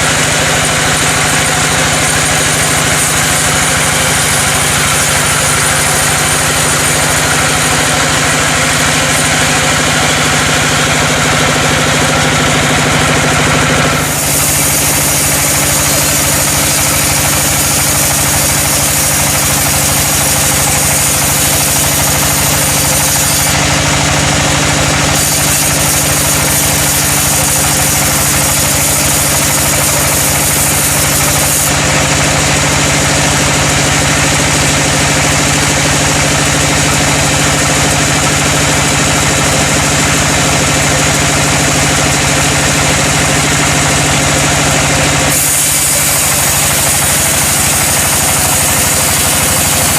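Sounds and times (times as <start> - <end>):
sawmill machinery drone: 0.0 - 49.9.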